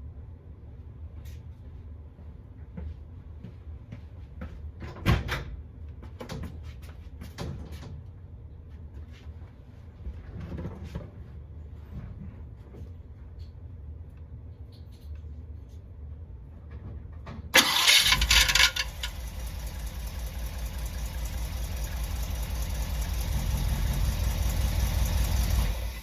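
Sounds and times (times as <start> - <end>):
car starter clicking: 17.6 - 26.0
steady low rumble: 18.2 - 26.0.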